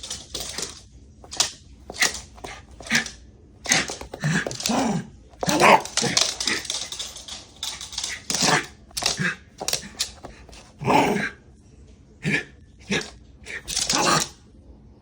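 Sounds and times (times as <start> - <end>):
clicking and scuffling: 0.0 - 10.9, 12.9 - 14.4
dog growling excitedly: 1.9 - 11.4, 12.2 - 14.4.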